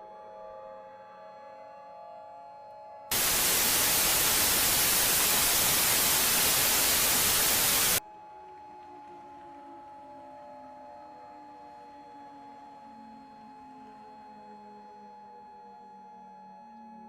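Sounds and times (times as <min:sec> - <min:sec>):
loud white-noise static: 0:03.1 - 0:08.0.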